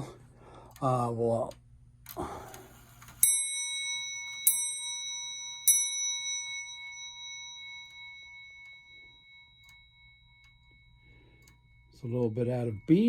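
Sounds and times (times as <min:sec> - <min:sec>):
clock ticking: 0:00.0 - 0:13.0
clock striking bell: 0:02.7 - 0:13.0.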